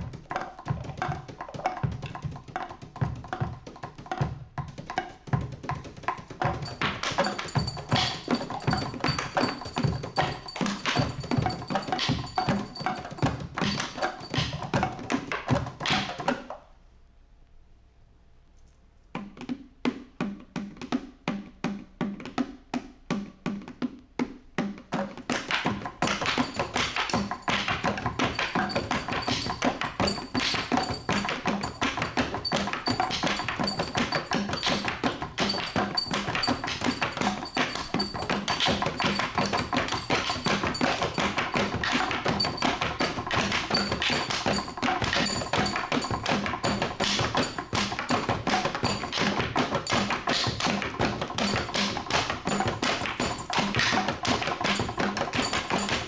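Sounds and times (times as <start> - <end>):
dry percussive strikes: 5.7 - 16.2, 25.3 - 56.0.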